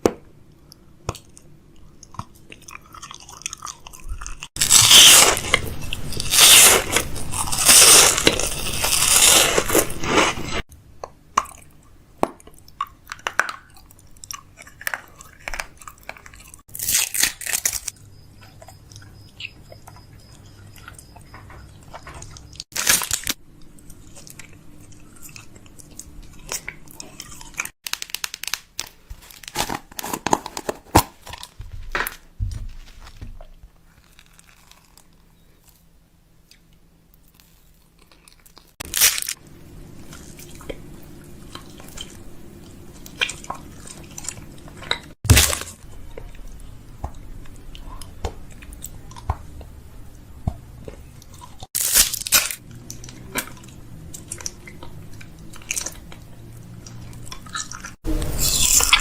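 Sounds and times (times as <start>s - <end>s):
packaging rustling: 27.8s - 34.6s.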